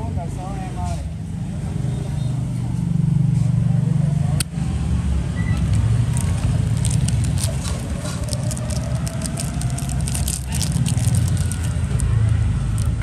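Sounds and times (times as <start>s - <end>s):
steady low rumble: 5.5s - 13.0s.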